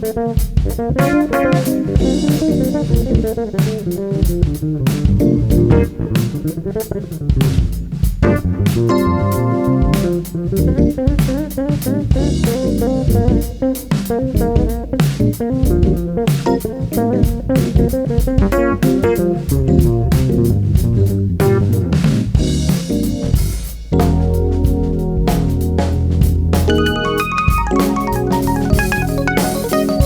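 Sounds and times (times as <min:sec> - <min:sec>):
bass guitar: 0:00.0 - 0:30.0
drum kit beat: 0:00.0 - 0:30.0
melodic guitar line: 0:26.7 - 0:30.0.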